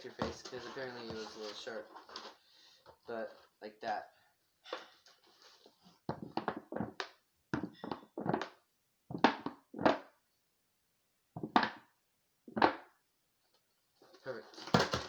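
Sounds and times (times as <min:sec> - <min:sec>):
plastic jug thunks and knocks: 0:09.1 - 0:10.1, 0:11.4 - 0:11.8, 0:14.6 - 0:15.0.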